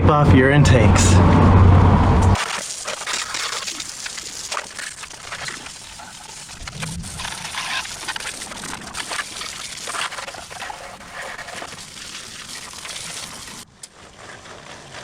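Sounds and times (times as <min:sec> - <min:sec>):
tape ripping and crackling: 0:02.4 - 0:13.6.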